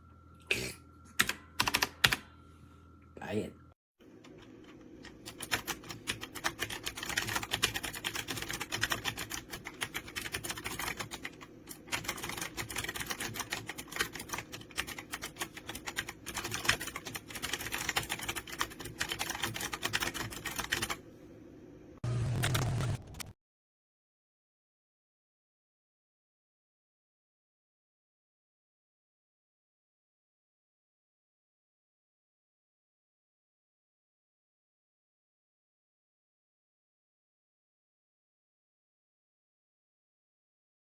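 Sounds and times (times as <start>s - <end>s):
mechanical keyboard typing: 1.2s - 2.3s, 4.2s - 21.0s
short low hum: 21.2s - 23.4s.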